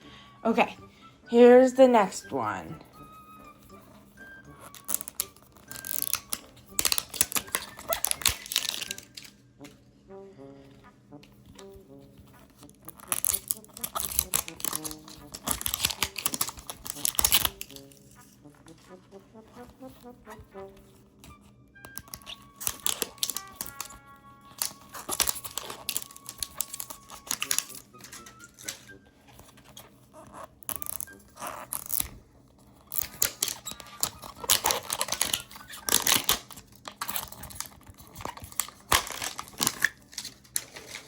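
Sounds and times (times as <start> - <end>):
quiet background music: 0.0 - 41.0
plastic packaging tearing and crinkling: 4.5 - 9.4, 11.5 - 18.5, 21.2 - 41.0.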